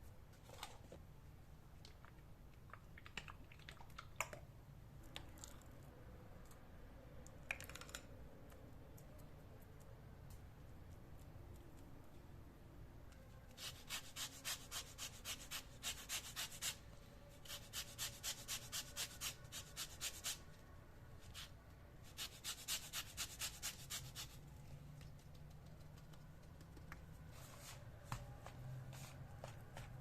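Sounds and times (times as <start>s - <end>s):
quiet handling sounds: 0.0s - 1.1s, 24.4s - 30.0s.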